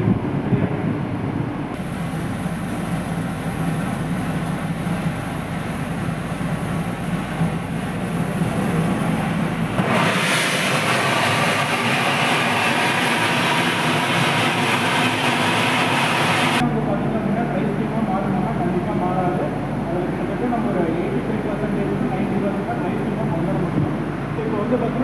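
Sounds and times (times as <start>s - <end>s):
heavy machinery droning: 1.6s - 16.9s
loud steam hiss: 1.8s - 16.6s.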